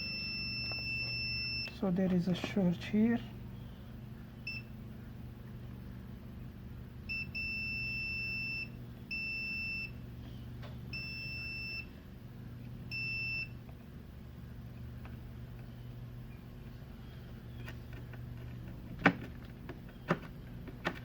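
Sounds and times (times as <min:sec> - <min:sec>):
multimeter beeping: 0:00.0 - 0:01.7, 0:07.1 - 0:10.0, 0:10.9 - 0:11.9, 0:12.9 - 0:13.6
low steady hum: 0:00.0 - 0:21.0.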